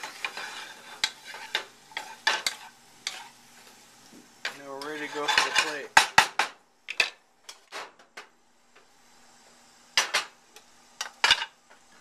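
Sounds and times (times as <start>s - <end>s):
kitchenware clinking and knocking: 5.2s - 8.3s, 10.0s - 10.4s, 11.0s - 11.6s.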